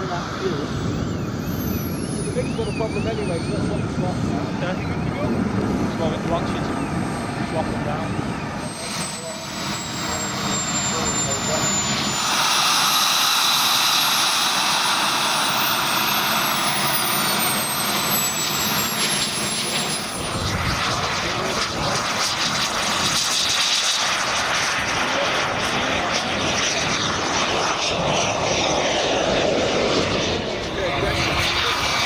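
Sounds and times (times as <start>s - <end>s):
model jet turbines running: 0.0s - 32.0s
thin high whine: 8.6s - 21.8s.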